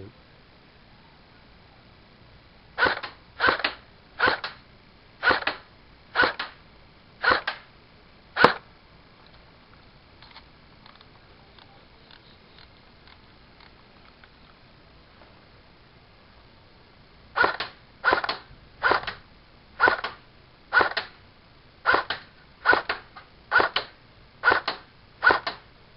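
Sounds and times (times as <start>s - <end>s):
airsoft rifle shots: 2.8s - 4.6s, 5.2s - 6.6s, 7.2s - 7.7s, 8.4s - 8.6s, 17.4s - 19.2s, 19.8s - 21.2s, 21.8s - 25.6s.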